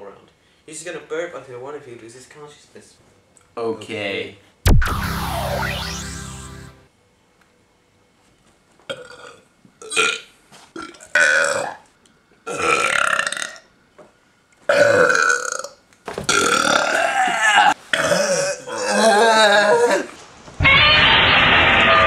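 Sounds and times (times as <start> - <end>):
person burping: 8.9 - 10.2, 10.8 - 11.8, 12.5 - 13.6, 14.7 - 15.7, 16.3 - 20.0.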